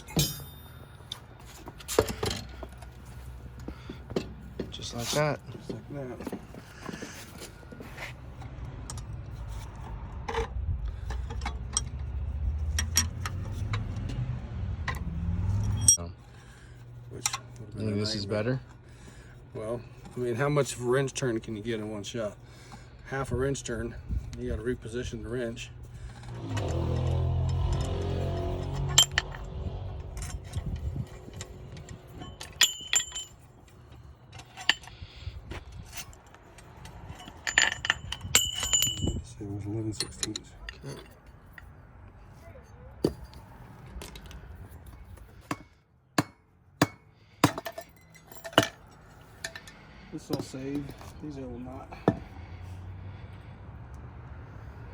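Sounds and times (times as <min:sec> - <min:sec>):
wrench clinking on metal: 0:00.0 - 0:01.2, 0:15.6 - 0:16.1, 0:25.9 - 0:35.2, 0:35.8 - 0:41.7, 0:43.0 - 0:51.2
low steady rumble: 0:22.4 - 0:45.6.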